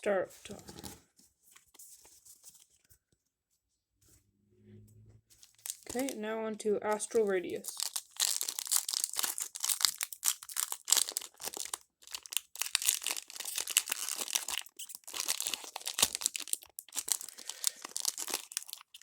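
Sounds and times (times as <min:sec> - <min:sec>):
foil wrapper crinkling and tearing: 0:05.4 - 0:06.2, 0:06.9 - 0:19.0.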